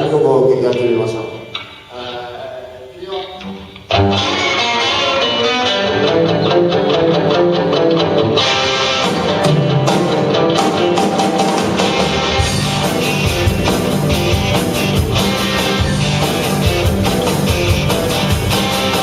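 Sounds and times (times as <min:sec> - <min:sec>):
drums: 0:00.0 - 0:19.0
electric guitar: 0:00.7 - 0:19.0
bass: 0:11.6 - 0:19.0.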